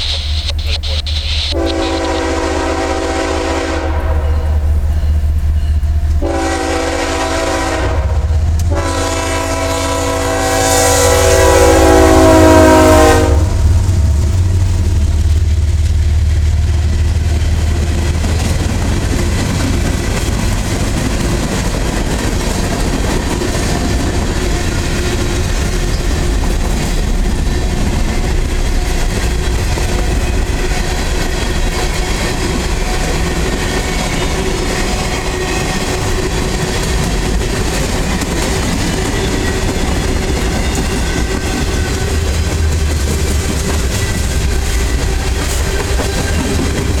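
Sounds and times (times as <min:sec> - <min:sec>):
freight train rumbling: 0:00.0 - 0:47.0
wheels clickety-clack: 0:14.1 - 0:47.0.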